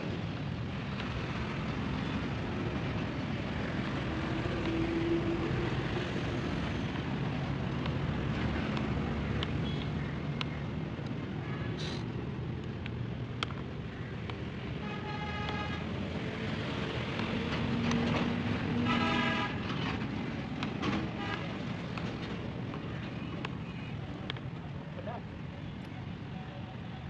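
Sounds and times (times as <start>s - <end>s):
traffic rumble: 0.0s - 27.0s.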